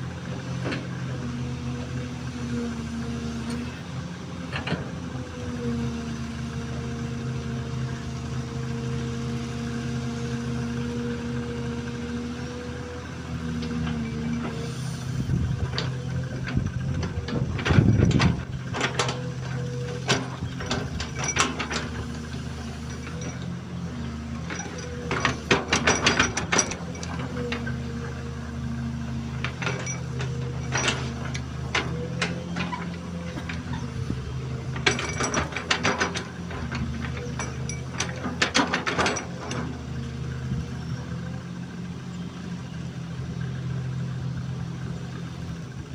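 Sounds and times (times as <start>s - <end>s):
excavator diesel engine running: 0.0s - 45.9s
metallic clanking and rattling: 13.4s - 41.0s.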